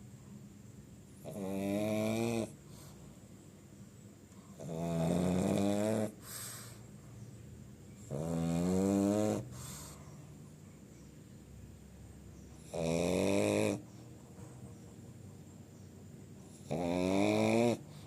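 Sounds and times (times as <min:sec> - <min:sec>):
dog snoring: 0:01.2 - 0:03.0, 0:04.5 - 0:06.8, 0:08.0 - 0:10.2, 0:12.6 - 0:14.6, 0:16.4 - 0:18.0.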